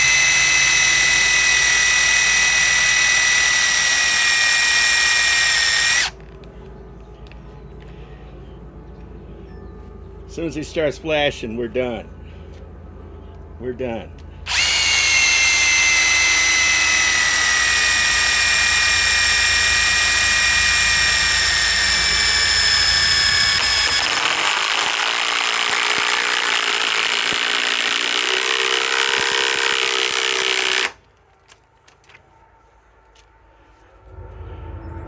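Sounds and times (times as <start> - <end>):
impact wrench whining: 0.0 - 6.4, 14.5 - 31.0.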